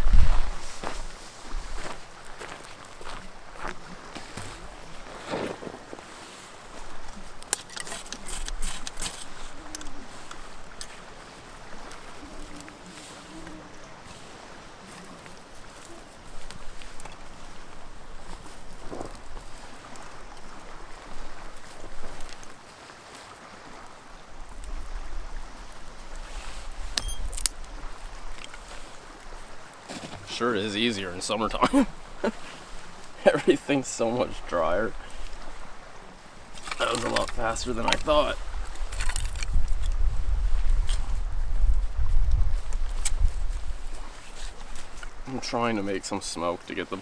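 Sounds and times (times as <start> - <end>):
wind buffeting microphone: 0.0 - 6.1, 31.5 - 45.3
twigs snapping: 6.8 - 11.1, 26.2 - 30.3, 36.4 - 41.1.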